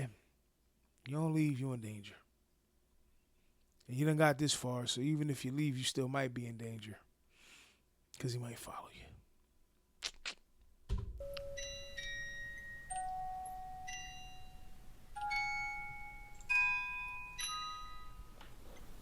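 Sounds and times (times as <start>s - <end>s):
eerie bell-like notes: 11.2s - 18.4s.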